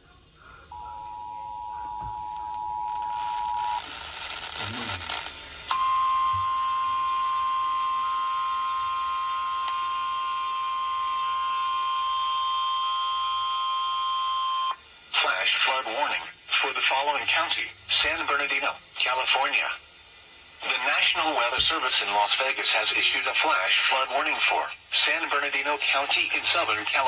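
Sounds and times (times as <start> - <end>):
two-tone attention signal: 0.7 - 3.8, 5.7 - 14.7
steady warning alarm tone: 0.7 - 3.9, 5.7 - 14.8
radio static burst: 2.0 - 5.7, 15.1 - 19.8, 20.6 - 27.0.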